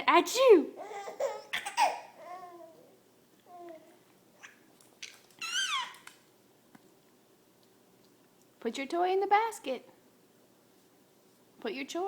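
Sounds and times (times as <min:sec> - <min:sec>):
toddler squealing: 0:05.4 - 0:06.1.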